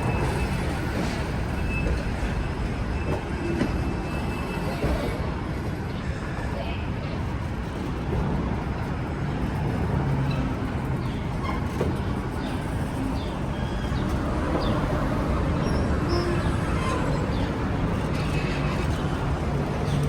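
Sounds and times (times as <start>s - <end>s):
steam train rumbling: 0.0s - 20.0s.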